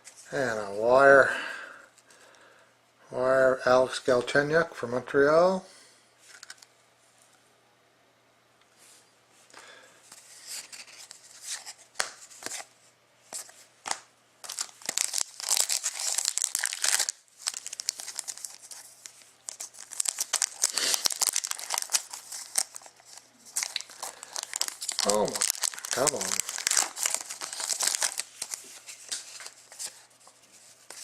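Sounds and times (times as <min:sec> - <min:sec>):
wrappers crinkling: 0:13.8 - 0:31.0
wrappers tearing: 0:14.4 - 0:30.0.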